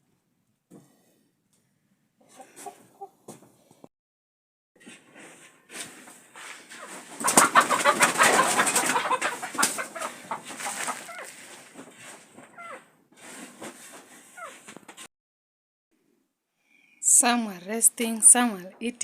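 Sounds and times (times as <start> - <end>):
chickens clucking: 2.2 - 3.4, 6.4 - 12.9.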